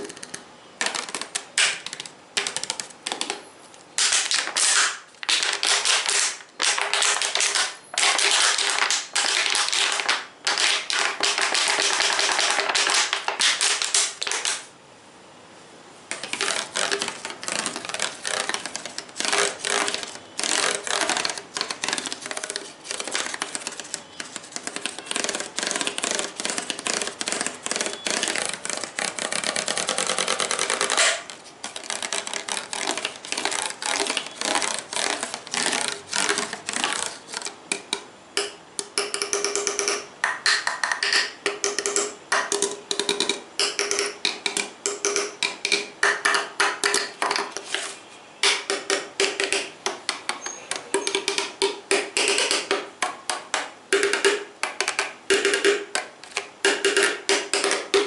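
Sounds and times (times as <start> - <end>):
fingers tapping rapidly: 0.0 - 3.4, 4.0 - 14.7, 16.1 - 47.6, 48.4 - 58.0.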